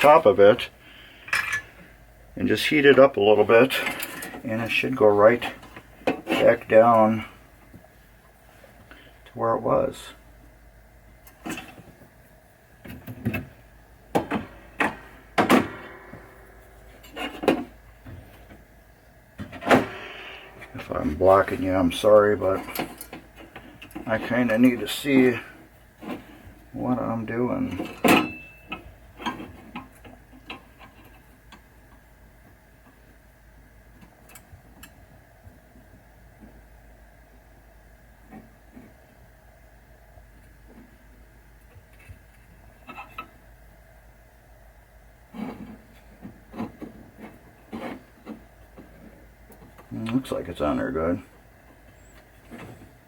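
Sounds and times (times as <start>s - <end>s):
faint steady hum: 0.0s - 53.0s
tools knocking and scraping: 1.3s - 1.8s, 5.5s - 6.7s, 12.8s - 18.6s, 19.4s - 26.6s, 27.6s - 32.0s, 41.7s - 43.4s, 45.3s - 50.2s, 51.7s - 53.0s.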